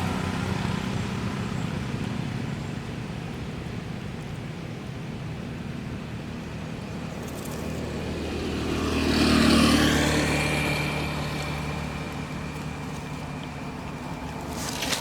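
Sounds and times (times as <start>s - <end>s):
vehicle driving past: 6.5s - 15.0s.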